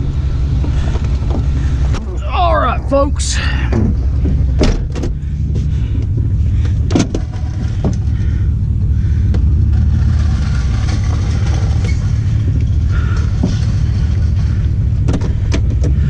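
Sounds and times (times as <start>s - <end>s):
vehicle engine rumbling: 0.0s - 16.0s
metal clanks and knocks: 3.7s - 8.2s, 9.2s - 16.0s.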